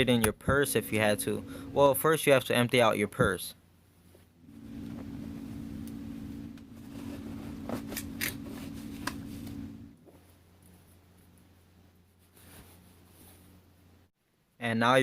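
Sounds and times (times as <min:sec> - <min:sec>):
small motor humming: 0:04.5 - 0:10.0.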